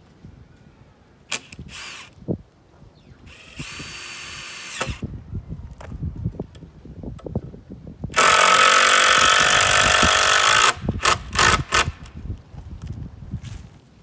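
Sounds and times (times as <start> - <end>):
cordless drill motor running: 1.3 - 2.1, 3.3 - 5.1, 8.2 - 12.1.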